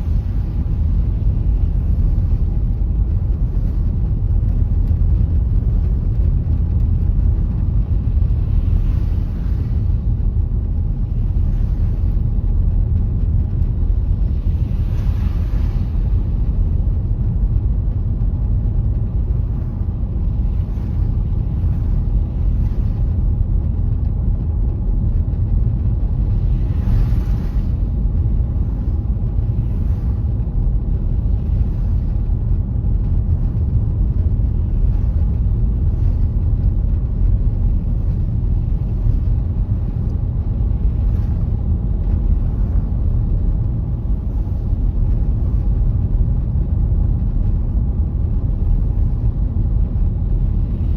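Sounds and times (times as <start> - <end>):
car tyres and engine rumbling: 0.0 - 50.9.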